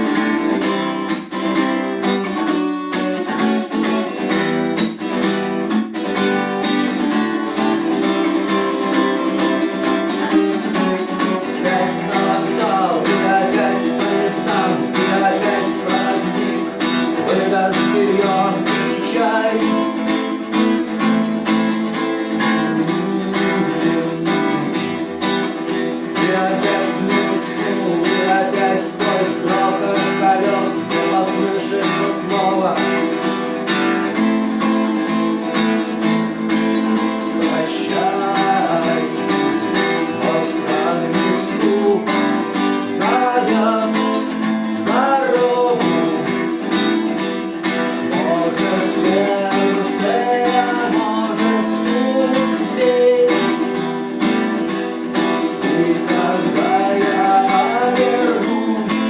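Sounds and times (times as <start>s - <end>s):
man singing: 0.0s - 0.8s, 7.4s - 59.0s
strummed acoustic guitar: 0.0s - 59.0s.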